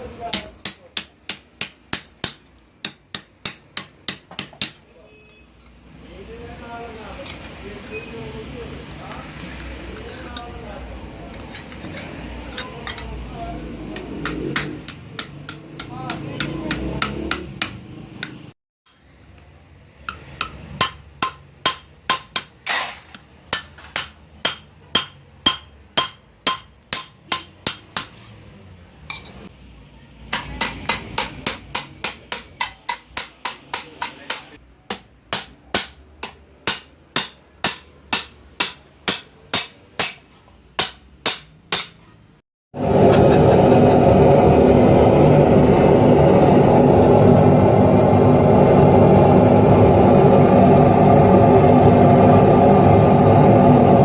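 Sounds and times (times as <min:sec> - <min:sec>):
hammer striking copper sheet: 0:00.2 - 0:04.8, 0:20.1 - 0:22.8, 0:23.5 - 0:28.3, 0:30.3 - 0:42.1.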